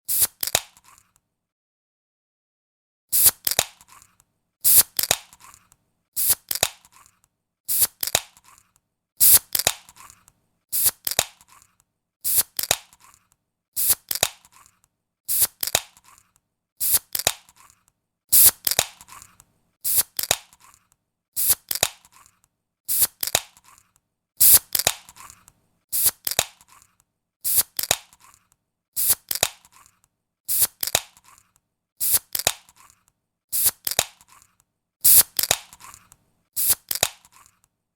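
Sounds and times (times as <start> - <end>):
fizzing hiss of escaping gas: 32.0 - 32.5, 33.6 - 34.0, 36.6 - 37.1.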